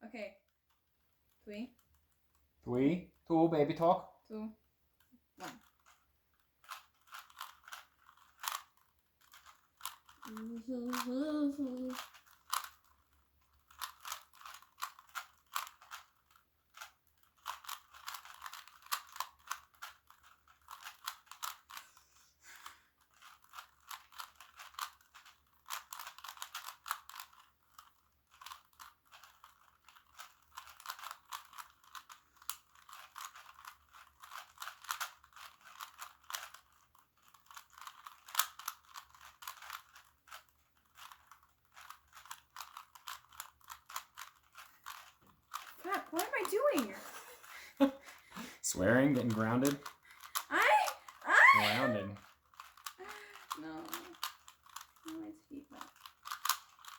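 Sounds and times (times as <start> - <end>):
puzzle cube layers clicking: 5.0 - 21.9, 22.6 - 56.9
person humming: 10.3 - 12.0, 50.5 - 52.2.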